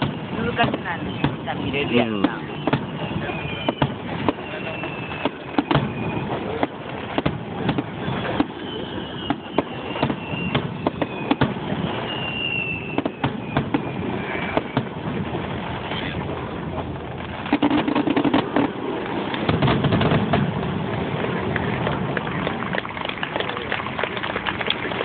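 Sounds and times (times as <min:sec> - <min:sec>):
faint whistling tones: 0:00.0 - 0:06.8, 0:07.7 - 0:15.0
firework bursts banging: 0:00.0 - 0:23.3.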